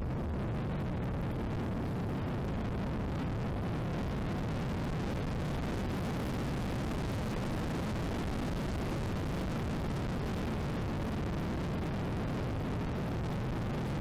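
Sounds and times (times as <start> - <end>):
wind rumble on microphone: 0.0 - 14.0.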